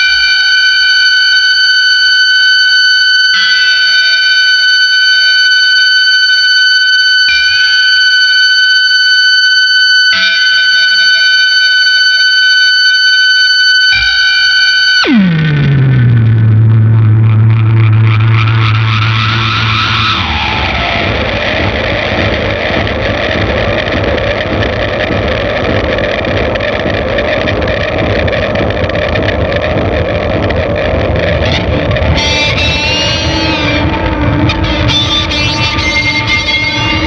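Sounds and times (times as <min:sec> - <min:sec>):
fuzz electric guitar note: 0:13.0 - 0:37.0
low drone with delay repeats: 0:15.0 - 0:37.0.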